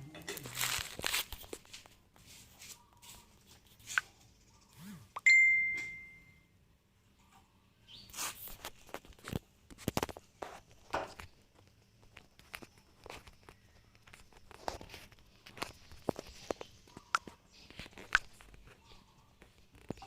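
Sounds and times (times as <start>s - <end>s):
bright ding: 5.2s - 6.4s
soft clicks and rustles: 8.1s - 20.0s.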